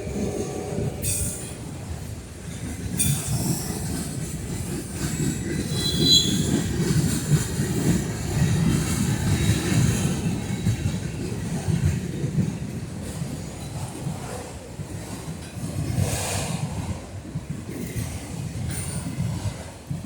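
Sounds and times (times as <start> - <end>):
train wheels rumbling on rail: 0.0 - 20.0
high wheel squeal: 5.7 - 6.6.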